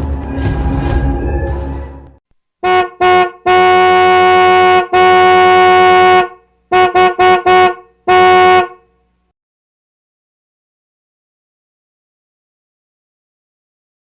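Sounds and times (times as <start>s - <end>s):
car horn honking: 2.6s - 8.9s.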